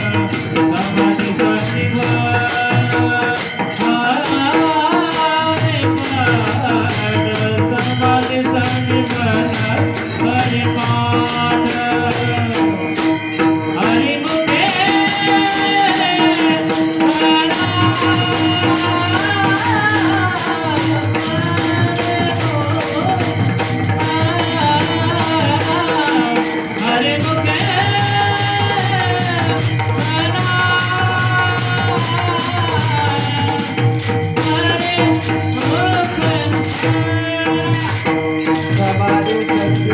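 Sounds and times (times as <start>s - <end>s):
hand drum: 0.0s - 39.9s
metallic jingling percussion: 0.0s - 39.9s
person singing devotional song: 0.0s - 39.9s.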